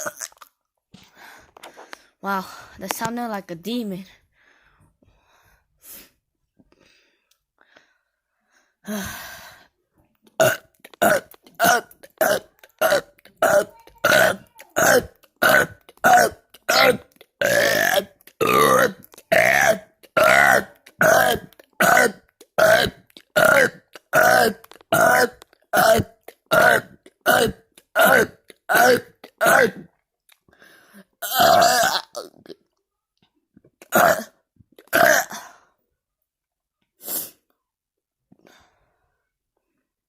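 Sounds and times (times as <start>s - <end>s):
person burping: 0.0s - 0.6s, 10.2s - 30.0s, 31.2s - 32.7s, 33.8s - 35.7s.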